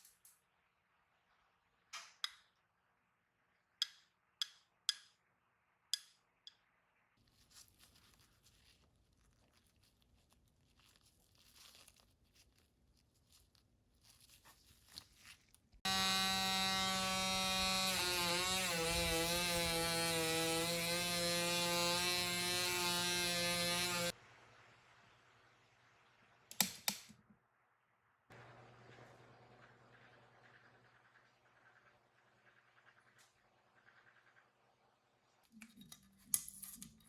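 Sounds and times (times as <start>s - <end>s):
electric power tool running: 15.8s - 24.1s.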